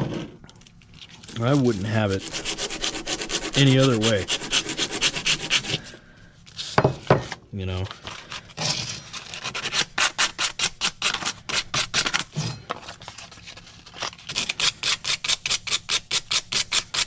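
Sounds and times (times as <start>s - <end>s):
sandpaper rubbing on metal: 1.4s - 5.9s, 14.3s - 17.0s.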